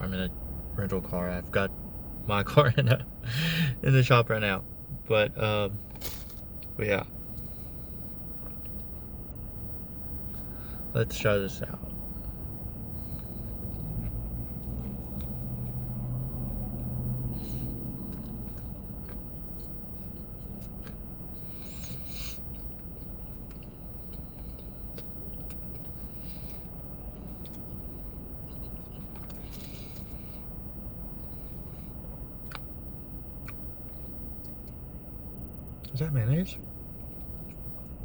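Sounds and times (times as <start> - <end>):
low hum inside car: 0.0 - 38.0
person chewing crunchy food: 16.5 - 34.8.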